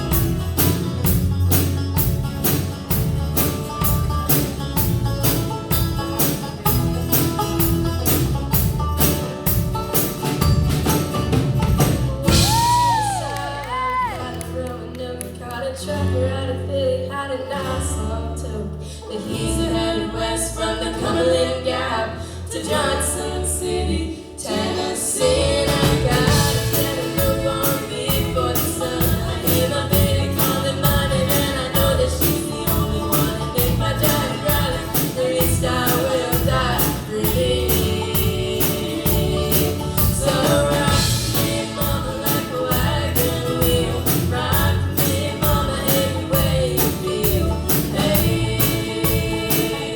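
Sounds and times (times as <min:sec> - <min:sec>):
band playing with steady beat: 0:00.0 - 0:14.3, 0:24.7 - 0:49.9
person singing: 0:12.0 - 0:49.9.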